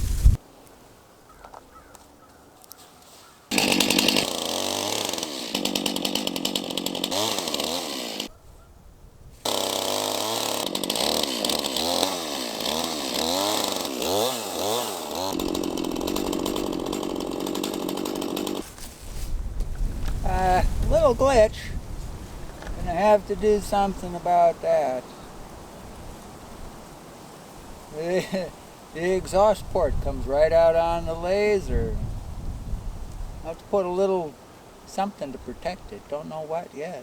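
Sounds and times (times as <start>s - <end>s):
chainsaw cutting log: 3.5s - 8.3s, 9.4s - 18.7s.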